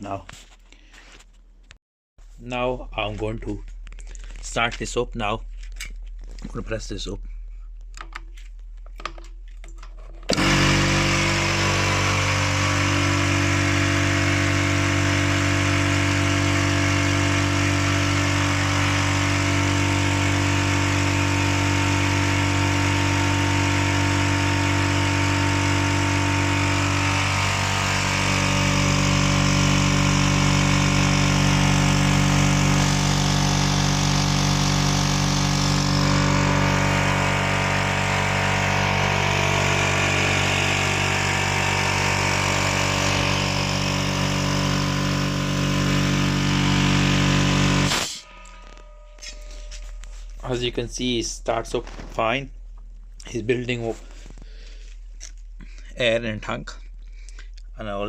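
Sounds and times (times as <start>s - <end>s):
air compressor running: 10.2s - 50.6s, 53.9s - 56.0s.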